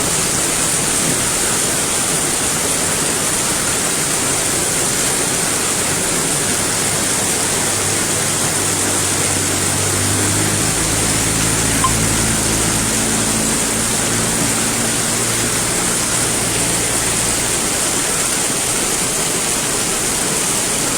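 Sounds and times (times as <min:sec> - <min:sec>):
heavy rain pouring: 0:00.0 - 0:20.9
vehicle engine passing: 0:05.2 - 0:18.7.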